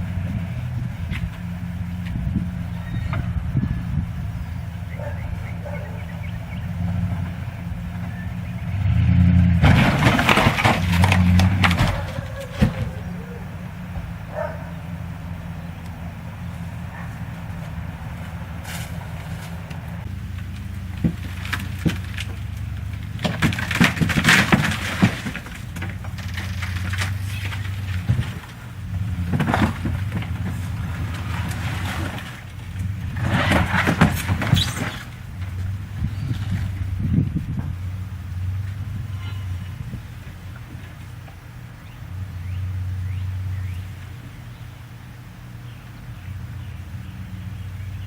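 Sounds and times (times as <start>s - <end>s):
loud crunching: 0.0s - 42.7s
engine running and revving: 0.0s - 44.6s
wood and debris cracking: 6.6s - 37.7s.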